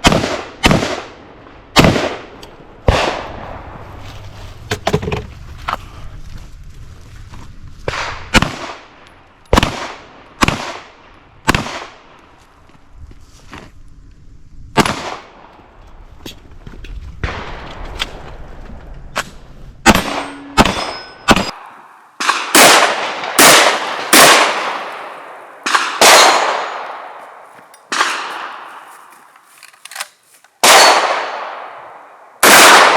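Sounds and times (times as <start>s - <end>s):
gunshots: 0.0s - 3.5s, 7.9s - 12.0s, 19.9s - 27.2s, 27.9s - 28.8s, 30.6s - 32.9s
metallic ringing: 19.9s - 21.6s.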